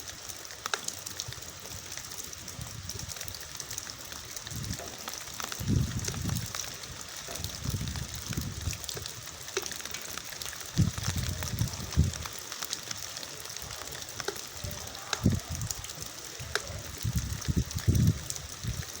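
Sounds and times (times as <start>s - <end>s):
rain falling: 0.0s - 19.0s.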